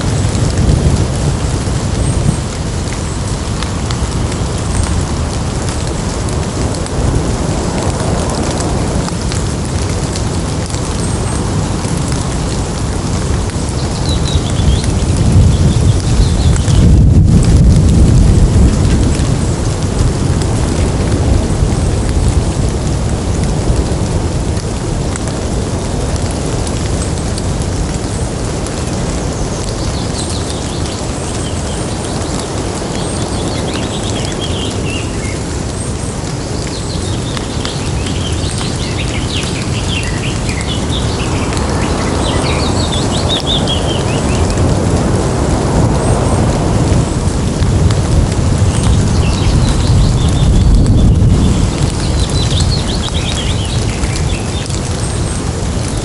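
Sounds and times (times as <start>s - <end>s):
rain dripping off leaves: 0.0s - 56.0s
thunder rumble: 0.0s - 56.0s
birds chirping: 29.3s - 44.7s, 48.8s - 56.0s.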